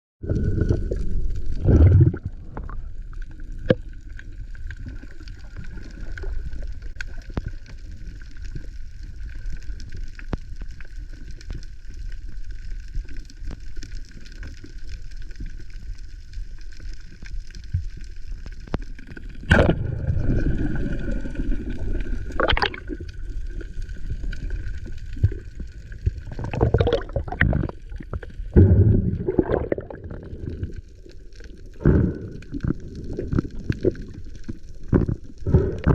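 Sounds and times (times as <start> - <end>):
murky underwater water rush: 0.2 - 35.9
surges of water: 0.3 - 3.8, 19.4 - 30.9
sharp knocks underwater: 19.4 - 20.3.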